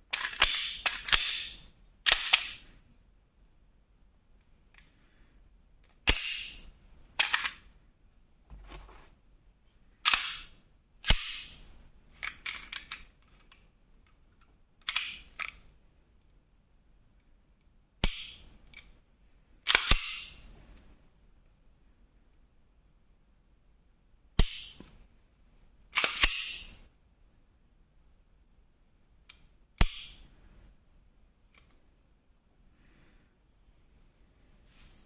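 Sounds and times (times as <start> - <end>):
pistol slide metallic clacks: 0.1 - 2.7, 6.0 - 7.6, 10.0 - 11.6, 14.8 - 15.6, 19.7 - 20.4, 26.0 - 26.8, 29.3 - 30.2.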